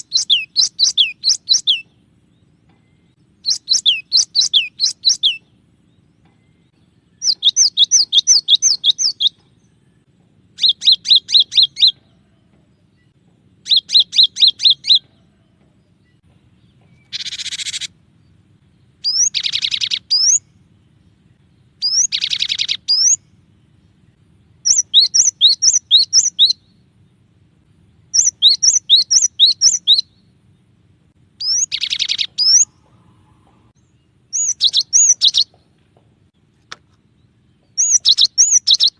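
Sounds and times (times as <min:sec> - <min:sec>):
bird singing whistled phrases: 0:00.0 - 0:01.8, 0:03.4 - 0:05.4, 0:07.2 - 0:09.4, 0:10.6 - 0:12.0, 0:13.7 - 0:15.0, 0:19.0 - 0:20.4, 0:21.8 - 0:23.2, 0:24.6 - 0:26.6, 0:28.2 - 0:30.1, 0:31.4 - 0:32.7, 0:34.3 - 0:35.5, 0:37.8 - 0:38.9.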